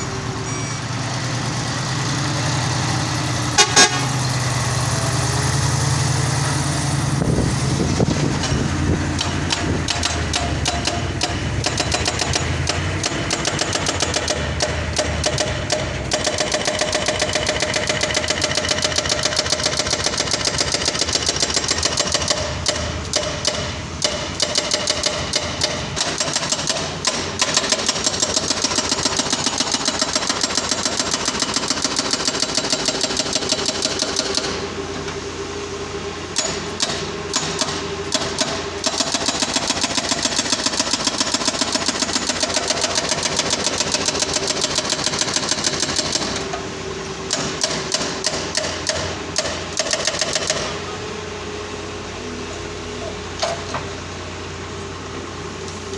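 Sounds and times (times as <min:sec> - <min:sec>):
excavator engine running: 0:00.0 - 0:55.9
hydraulic breaker hammering: 0:07.2 - 0:35.2, 0:36.2 - 0:51.0.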